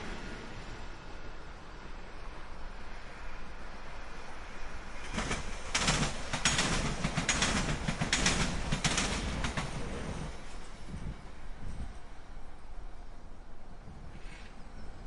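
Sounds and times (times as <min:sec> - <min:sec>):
train rumble: 0:00.0 - 0:15.0
train wheels clattering over joints: 0:05.0 - 0:11.3.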